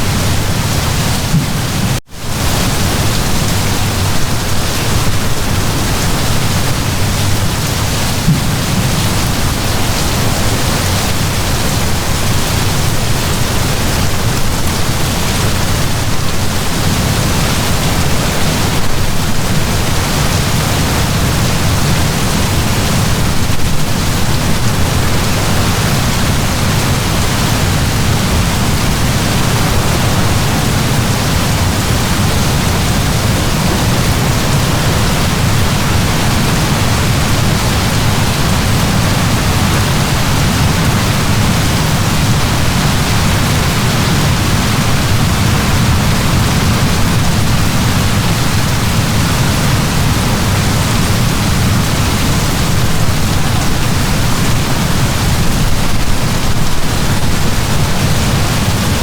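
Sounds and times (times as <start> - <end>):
heavy rain downpour: 0.0 - 59.0.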